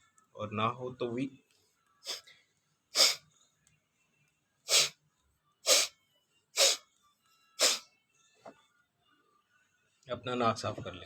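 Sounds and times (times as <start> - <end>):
man blowing air through nose: 3.0 - 3.2, 4.7 - 5.0, 5.6 - 5.9, 6.6 - 6.8, 7.6 - 7.8.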